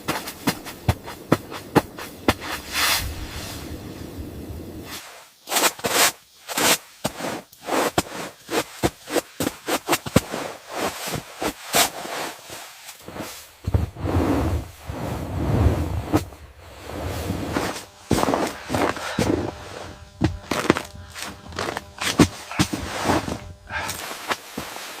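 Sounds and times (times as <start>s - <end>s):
low rumbling noise: 2.1s - 4.9s, 13.6s - 23.9s.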